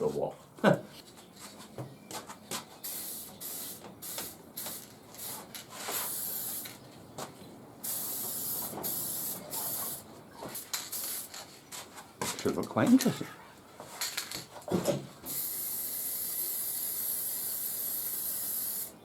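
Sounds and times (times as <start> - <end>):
spray paint hissing: 2.8 - 6.8, 7.8 - 11.4, 15.3 - 19.0.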